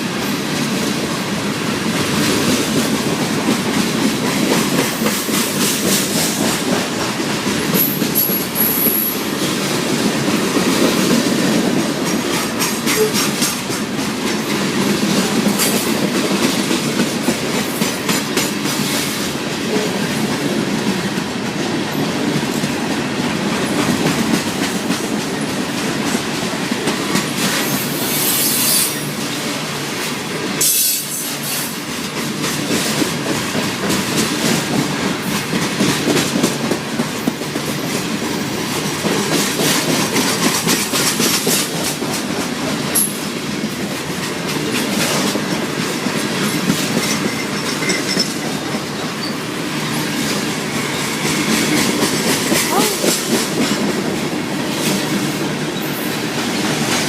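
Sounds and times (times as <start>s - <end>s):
freight train cars rolling past: 0.0s - 57.0s
steel wheels clacking over rail joints: 0.0s - 57.0s.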